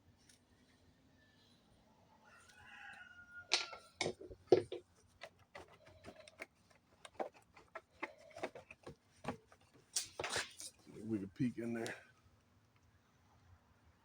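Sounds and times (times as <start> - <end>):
rooster crowing: 2.2 - 4.0
small parts clicking and tapping: 3.5 - 10.2.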